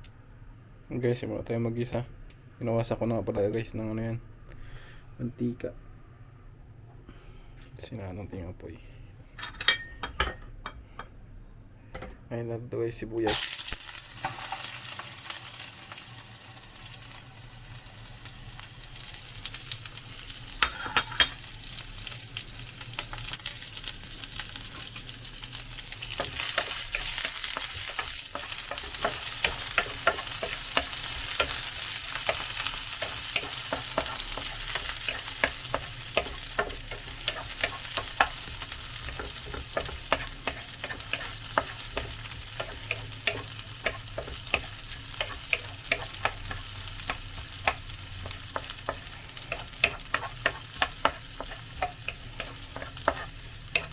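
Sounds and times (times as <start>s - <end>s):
onions sizzling in oil: 13.3s - 53.9s.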